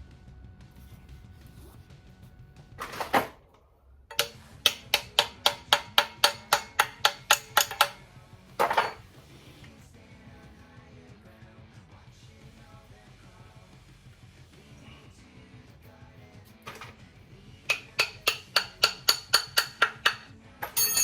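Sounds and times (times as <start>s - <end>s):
faint background music: 0.0s - 21.0s
hammer ringing on metal: 4.1s - 8.0s, 17.7s - 21.0s.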